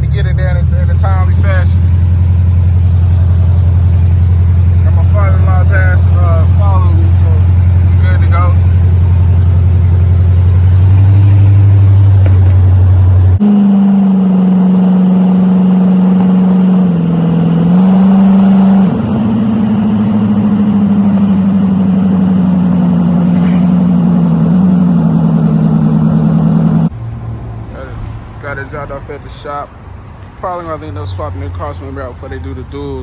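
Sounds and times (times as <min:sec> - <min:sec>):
loud car engine driving: 0:00.0 - 0:27.0.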